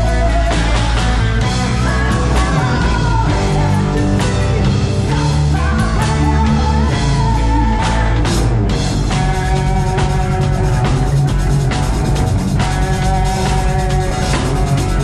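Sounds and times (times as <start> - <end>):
heavy rock band playing: 0.0 - 15.0
drum and cymbal hits: 7.0 - 15.0.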